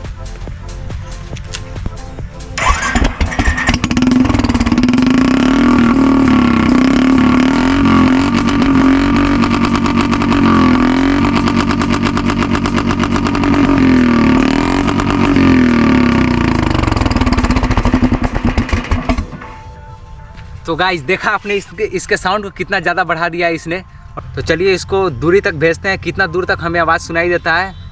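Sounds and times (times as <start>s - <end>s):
motorcycle engine revving: 1.8s - 19.6s.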